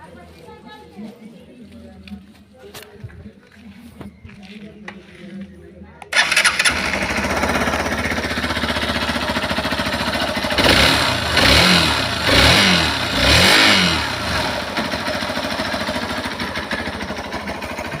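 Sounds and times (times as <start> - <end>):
motorcycle engine idling and revving: 6.1 - 18.0.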